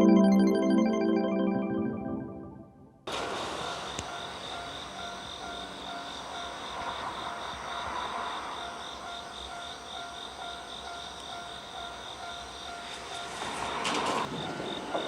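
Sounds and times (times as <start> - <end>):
electric train rumbling: 3.1 - 15.0
level-crossing alarm dinging: 3.1 - 15.0.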